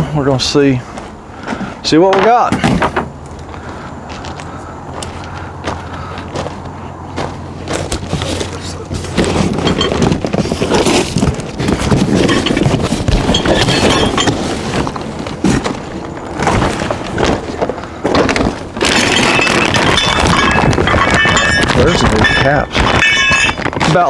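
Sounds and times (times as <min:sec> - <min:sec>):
knocks and thuds: 0:02.1 - 0:03.2, 0:07.7 - 0:24.0
packing rustling: 0:07.7 - 0:24.0
cardboard box ripping: 0:09.0 - 0:17.4.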